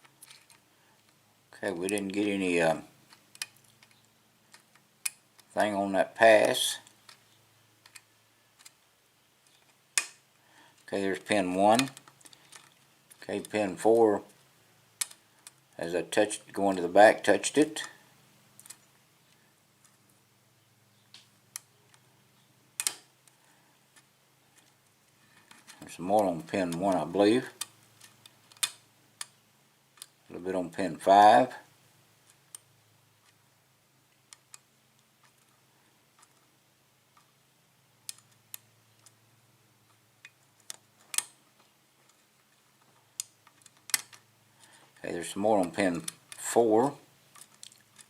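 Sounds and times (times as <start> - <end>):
lock pick clicking in lock: 22.8 - 23.1, 43.2 - 44.2.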